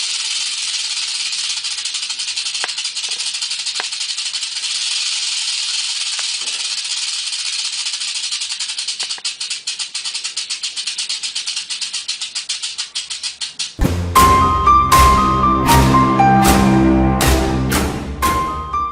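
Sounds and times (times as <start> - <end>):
rattlesnake rattle buzzing: 0.0 - 13.8.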